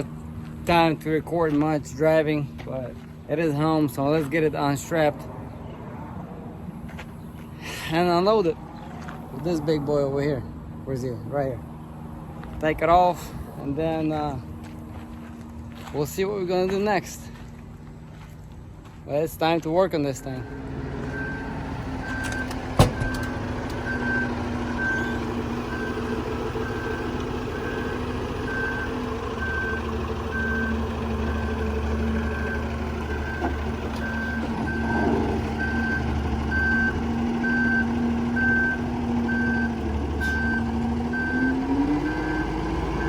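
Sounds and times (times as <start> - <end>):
back-up alarm beeping: 20.4 - 31.6, 32.2 - 43.0
machine engine running: 20.4 - 35.0.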